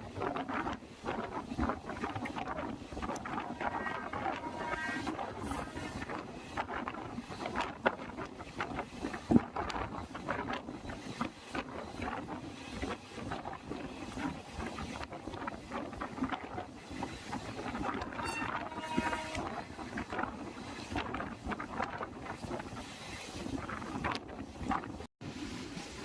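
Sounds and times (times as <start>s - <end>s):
brief high-pitched tone: 18.2s - 19.4s.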